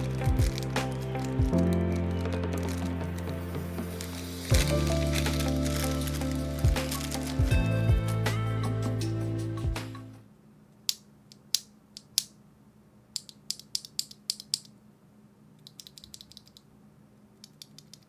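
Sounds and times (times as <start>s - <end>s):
background music: 0.0s - 10.3s.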